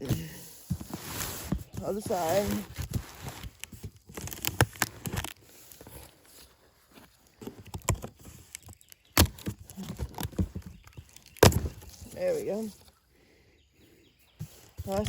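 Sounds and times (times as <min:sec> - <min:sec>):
cardboard box being handled: 0:00.0 - 0:13.0, 0:14.3 - 0:15.0
packing tape being slit open: 0:02.6 - 0:06.0.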